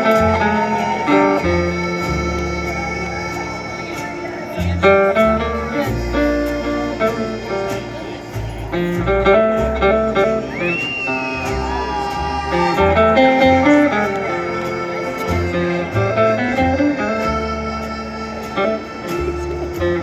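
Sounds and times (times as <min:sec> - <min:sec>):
live country band playing: 0:00.0 - 0:20.0
plucked guitar lead: 0:00.0 - 0:20.0
high whistle-like tone: 0:10.4 - 0:12.6.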